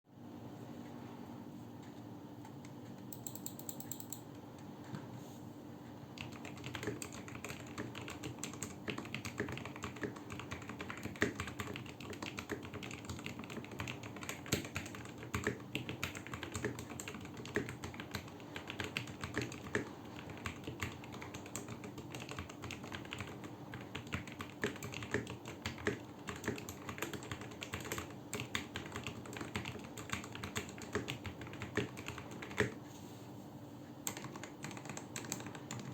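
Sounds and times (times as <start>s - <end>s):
typing on mechanical keyboard: 3.1s - 4.2s, 6.2s - 32.8s, 34.0s - 35.9s.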